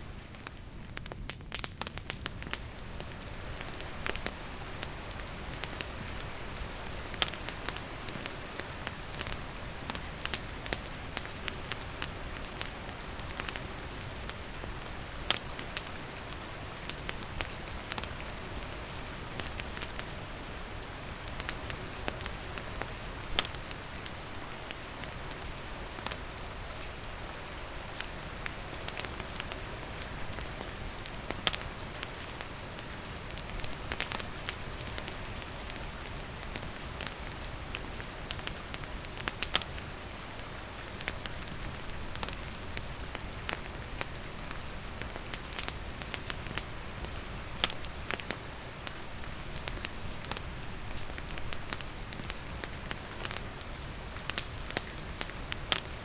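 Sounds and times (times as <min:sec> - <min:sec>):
campfire crackling and popping: 0:00.0 - 0:56.0
steady rain falling: 0:00.0 - 0:56.0.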